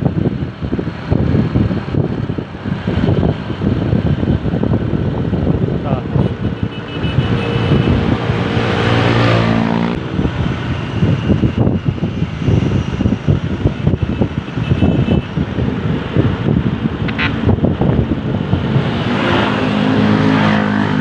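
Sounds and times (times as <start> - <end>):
heavy vehicle engine droning: 0.0 - 14.5
rumbling road noise: 0.0 - 21.0
wind buffeting microphone: 0.0 - 21.0.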